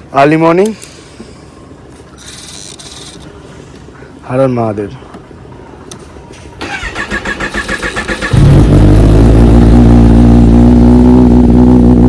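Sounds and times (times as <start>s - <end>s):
electric starter cranking: 6.6s - 9.2s.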